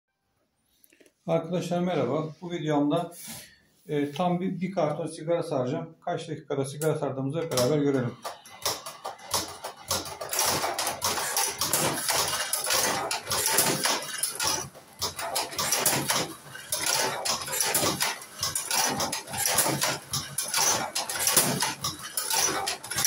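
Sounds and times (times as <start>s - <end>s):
cigarette rolling machine rattling: 7.4s - 23.0s.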